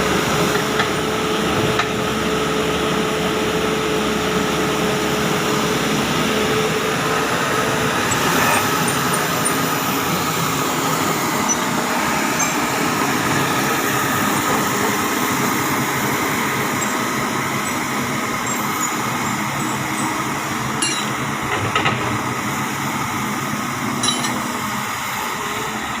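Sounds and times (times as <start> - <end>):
excavator diesel engine running: 0.0 - 26.0
short metallic clinks: 20.8 - 21.2, 24.0 - 24.5.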